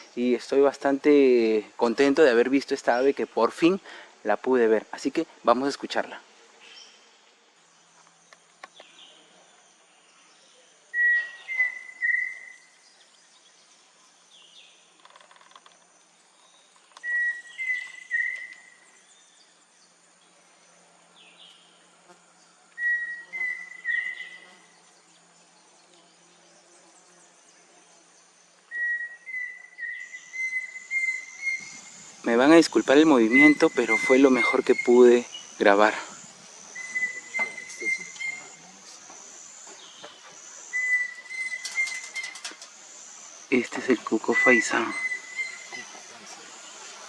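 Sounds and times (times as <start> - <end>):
faint insect hum: 0.0 - 47.0
cuckoo whistling song: 10.9 - 12.8, 16.9 - 18.8, 22.8 - 24.4, 28.7 - 31.9, 33.2 - 35.4, 36.8 - 38.6, 39.8 - 42.5, 44.2 - 46.0.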